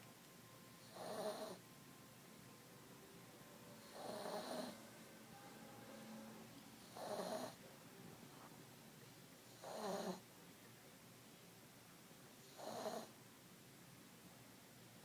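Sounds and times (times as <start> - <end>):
pet snoring: 0.8 - 1.6, 3.8 - 4.8, 6.8 - 7.6, 9.5 - 10.2, 12.5 - 13.1.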